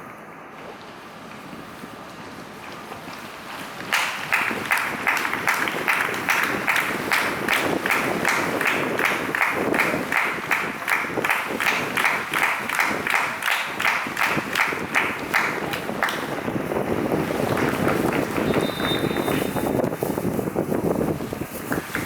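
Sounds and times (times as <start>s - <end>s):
rain and wind hiss: 0.1s - 22.0s
crowd clapping in unison: 3.5s - 20.2s, 21.5s - 22.0s.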